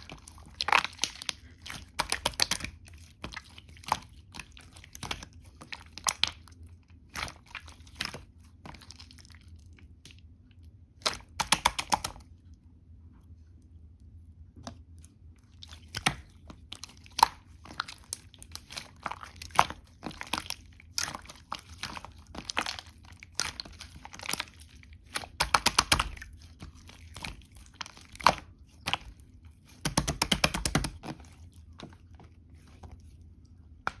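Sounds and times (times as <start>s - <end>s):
rapid clicking of slime: 0.0s - 6.5s, 11.0s - 12.2s, 15.8s - 31.3s
slime squishing sticky clicks: 11.0s - 12.3s, 15.6s - 31.9s.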